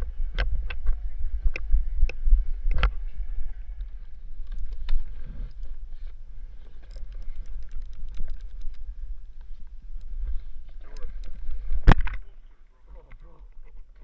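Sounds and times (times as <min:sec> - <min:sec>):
wind buffeting microphone: 0:00.0 - 0:12.5
small clicks and knocks: 0:03.8 - 0:12.3.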